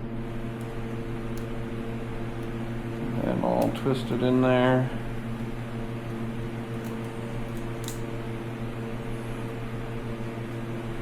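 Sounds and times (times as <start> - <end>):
machine hum with low buzz: 0.0 - 11.0
faint light clicks: 0.6 - 1.6.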